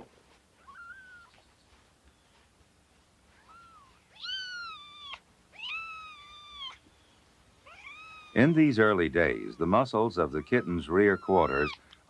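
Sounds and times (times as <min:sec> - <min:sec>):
kittens mewing: 0:03.4 - 0:06.9, 0:07.6 - 0:08.8, 0:10.4 - 0:11.9.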